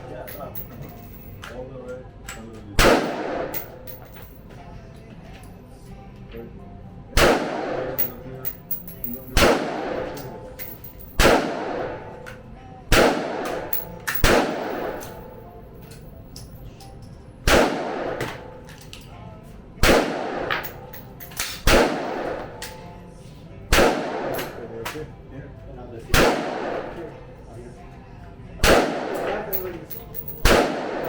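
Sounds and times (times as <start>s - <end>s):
rifle shots echoing: 2.8s - 4.0s, 7.2s - 12.2s, 12.9s - 15.3s, 17.4s - 18.6s, 19.8s - 22.8s, 23.7s - 24.7s, 26.1s - 27.1s, 28.6s - 31.0s.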